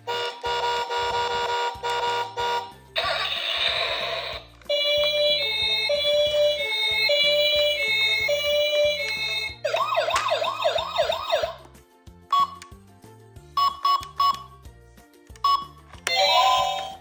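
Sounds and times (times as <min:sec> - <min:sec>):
background music: 0:00.1 - 0:17.0
toy siren yelps: 0:03.0 - 0:11.6.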